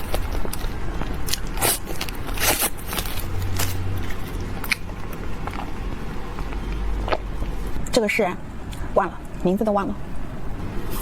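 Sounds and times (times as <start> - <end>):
crackly crunches: 0.0 - 7.6
chewing food: 0.0 - 7.8
low steady hum: 0.0 - 11.0.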